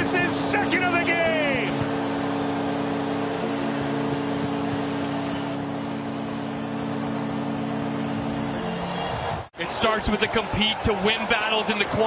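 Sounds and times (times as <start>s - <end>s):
arena goal horn chord: 0.0s - 9.0s
crowd cheering: 0.0s - 12.0s.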